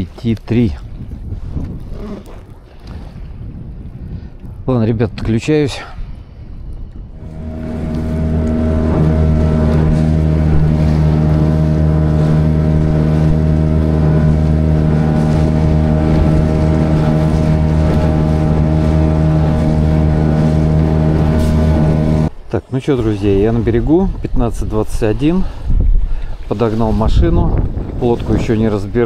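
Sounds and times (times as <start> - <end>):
wind on microphone: 0.0 - 22.4, 23.0 - 29.0
outboard motor running: 7.2 - 22.3.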